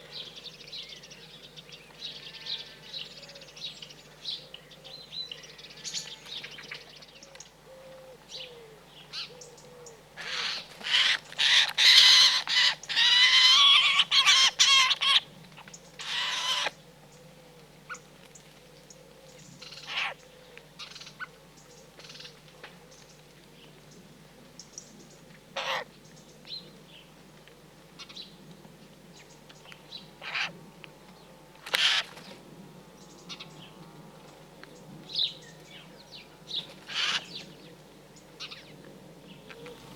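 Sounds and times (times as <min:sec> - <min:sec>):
birds harsh chattering calls: 0:31.7 - 0:32.4, 0:36.5 - 0:37.5.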